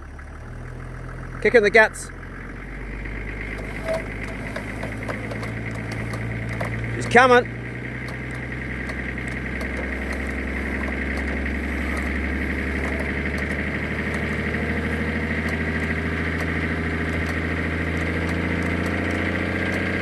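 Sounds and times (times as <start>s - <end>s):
truck engine revving: 0.0s - 20.0s.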